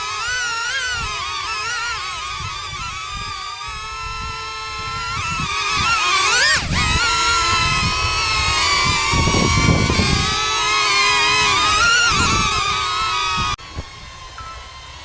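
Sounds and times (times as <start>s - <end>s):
drone propellers buzzing: 0.0s - 15.0s.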